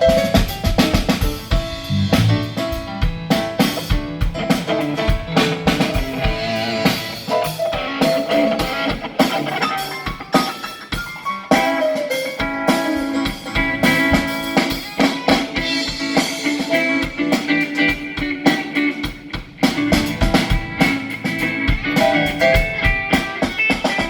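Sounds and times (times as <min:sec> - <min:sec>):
drum kit playing: 0:00.0 - 0:24.0
guitar sustained notes: 0:04.7 - 0:10.4, 0:11.4 - 0:24.0.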